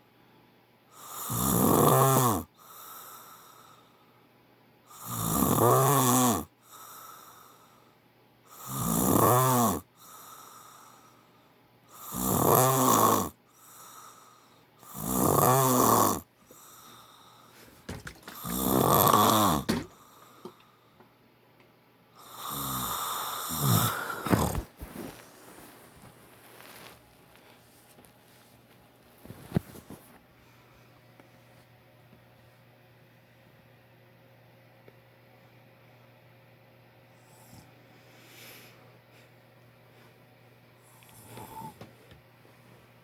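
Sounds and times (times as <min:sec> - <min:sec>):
man snoring loudly: 0:01.0 - 0:03.4, 0:04.9 - 0:07.3, 0:08.5 - 0:10.8, 0:11.9 - 0:14.2, 0:14.8 - 0:16.8, 0:18.4 - 0:20.0, 0:22.2 - 0:24.7, 0:41.1 - 0:41.8
soft breathing: 0:02.6 - 0:04.2, 0:06.6 - 0:08.0, 0:09.9 - 0:11.6, 0:13.4 - 0:14.8, 0:16.4 - 0:18.4, 0:22.3 - 0:31.7, 0:37.1 - 0:43.0.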